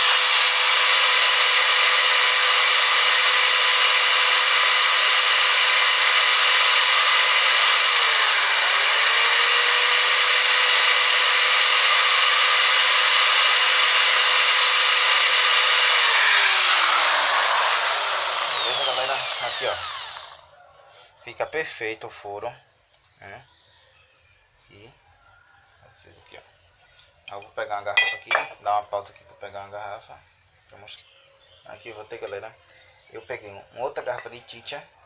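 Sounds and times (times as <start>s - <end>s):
drill motor whine: 0.0s - 20.5s
bit grinding glass: 28.0s - 28.7s.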